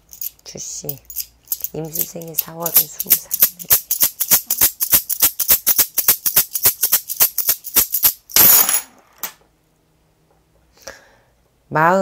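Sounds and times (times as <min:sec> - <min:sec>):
fast rattling clicks: 0:01.2 - 0:08.2.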